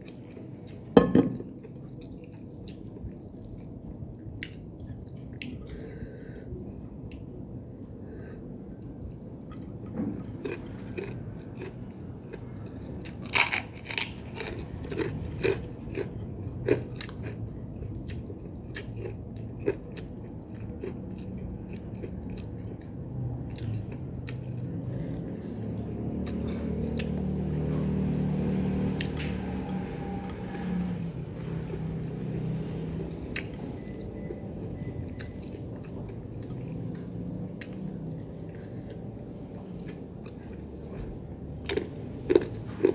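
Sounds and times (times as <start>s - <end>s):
low steady hum: 0.0s - 42.9s
chewing: 7.0s - 30.3s, 31.4s - 42.9s
crunching bites: 13.2s - 14.6s.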